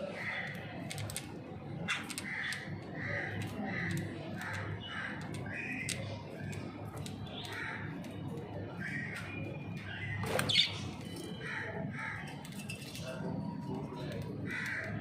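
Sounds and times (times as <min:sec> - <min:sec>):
budgerigars chirping: 0:10.2 - 0:11.4.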